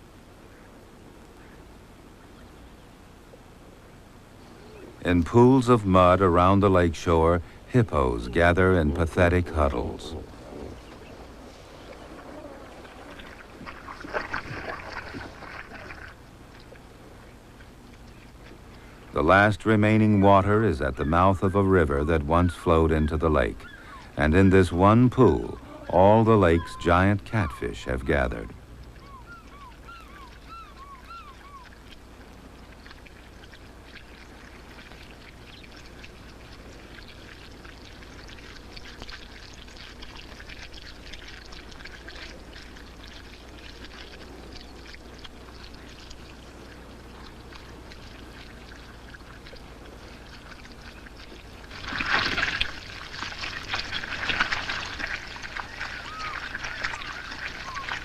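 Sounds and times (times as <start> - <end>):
short bird calls: 4.3 - 5.0, 23.5 - 24.6, 28.9 - 31.8, 55.6 - 58.0
water splashing: 4.9 - 58.0
fish churning and gulping in mud: 7.2 - 19.1, 28.8 - 58.0.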